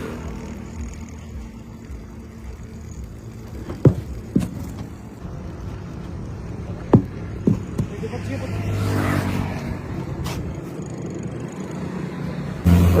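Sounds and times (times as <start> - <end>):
engine idling: 0.0 - 8.4
sharp knocks: 6.8 - 7.9.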